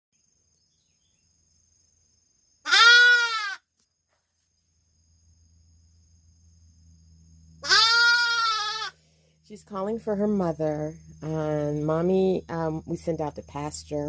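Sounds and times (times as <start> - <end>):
lamb bleating: 2.7 - 3.6, 7.6 - 9.0.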